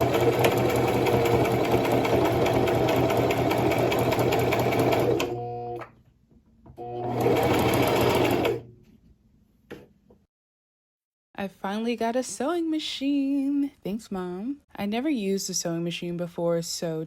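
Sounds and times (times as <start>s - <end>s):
sewing machine running: 0.0s - 5.8s, 6.8s - 8.7s.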